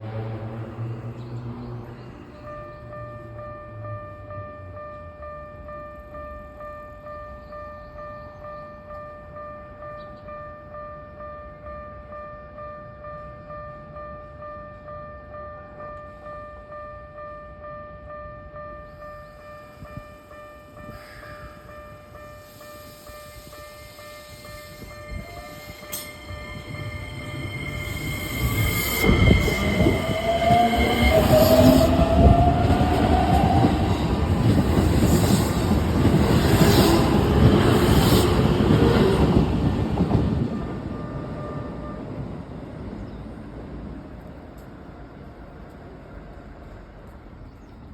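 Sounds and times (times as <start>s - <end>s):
train passing with motor whine: 0.0s - 7.5s, 8.2s - 47.9s
level crossing alarm: 2.5s - 35.0s.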